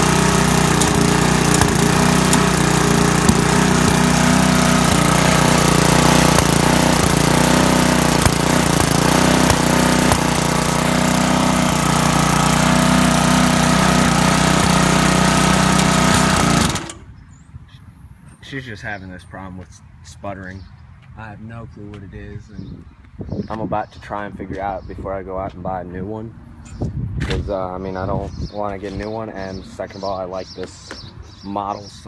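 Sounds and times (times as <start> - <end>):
lawn mower engine sputtering: 0.0 - 17.2.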